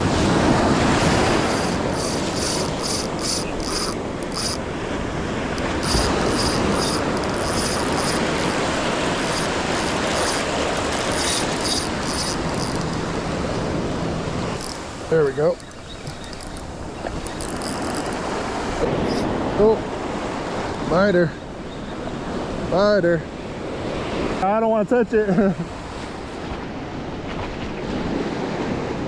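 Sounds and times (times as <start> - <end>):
wind on microphone: 0.0 - 20.9
beach surf: 0.0 - 29.0
short scratchy ticks: 1.0 - 4.7, 5.5 - 18.3.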